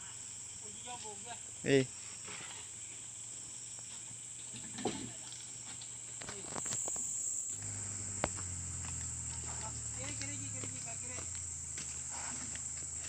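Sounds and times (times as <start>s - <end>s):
high-pitched insect chirring: 5.3s - 13.0s
low steady hum: 6.4s - 13.0s.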